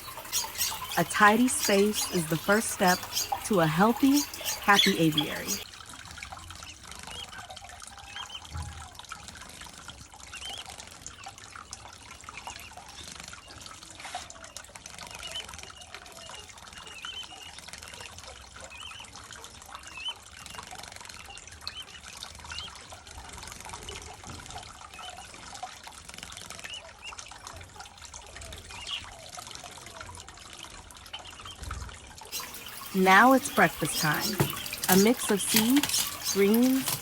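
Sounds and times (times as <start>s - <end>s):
finches chirping: 0.0s - 5.6s, 32.3s - 37.0s
water trickling: 0.0s - 15.0s, 32.2s - 37.0s.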